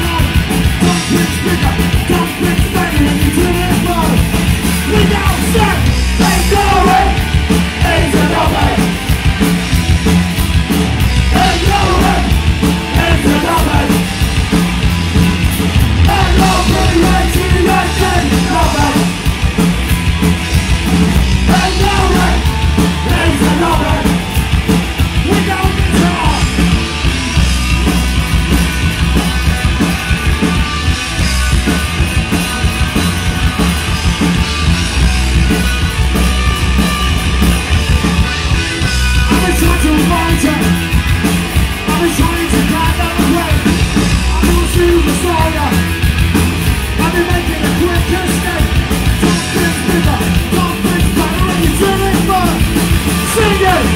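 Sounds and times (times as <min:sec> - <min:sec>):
punk rock band playing live: 0:00.0 - 0:53.9
shouted vocals: 0:04.9 - 0:07.2, 0:07.8 - 0:09.0, 0:11.3 - 0:13.9.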